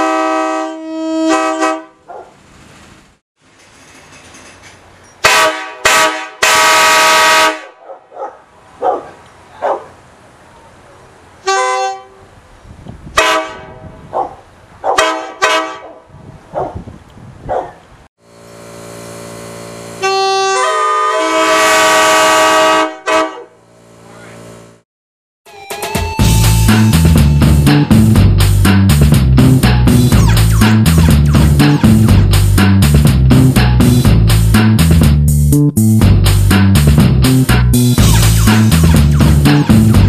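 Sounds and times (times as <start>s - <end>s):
locomotive air horn blasts: 0.0s - 2.0s, 5.2s - 7.8s, 11.4s - 12.3s, 13.1s - 14.0s, 15.0s - 15.9s, 18.4s - 23.6s.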